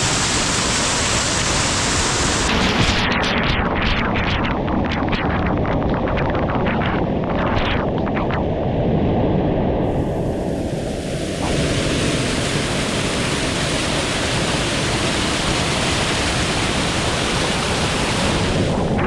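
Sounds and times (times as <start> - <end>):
waterfall rushing: 0.0 - 3.0, 9.8 - 19.0.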